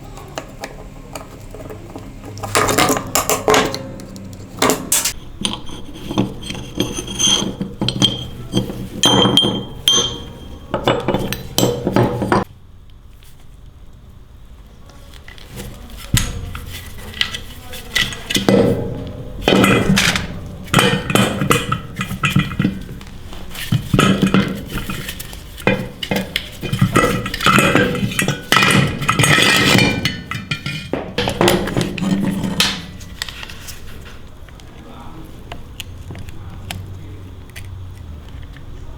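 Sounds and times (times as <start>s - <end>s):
metal parts clinking and clattering: 2.4s - 12.5s, 16.1s - 34.2s.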